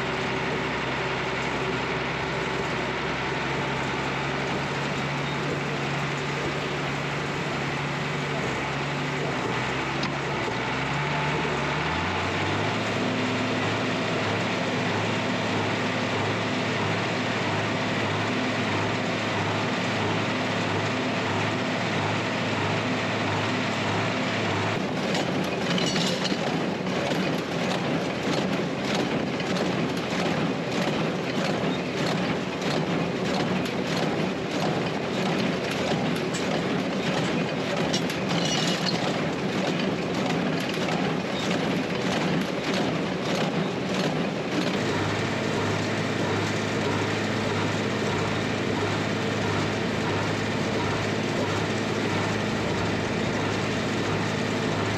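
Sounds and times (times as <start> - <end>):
tractor engine running: 0.0 - 54.9
high squeaks: 38.3 - 39.1.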